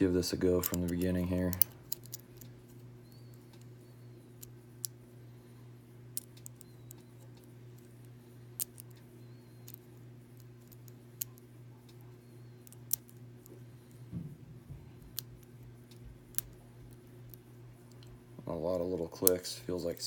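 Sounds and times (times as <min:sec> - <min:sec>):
low hum: 0:00.0 - 0:20.0.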